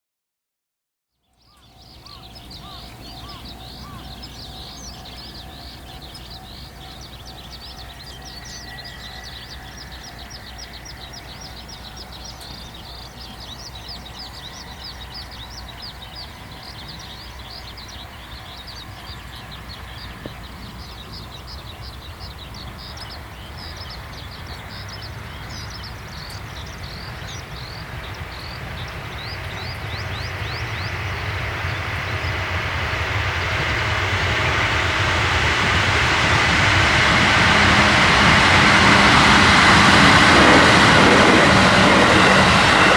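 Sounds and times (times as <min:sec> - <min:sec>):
electric train approaching: 0:01.3 - 0:42.9
rapid high chirping calls: 0:01.4 - 0:31.8.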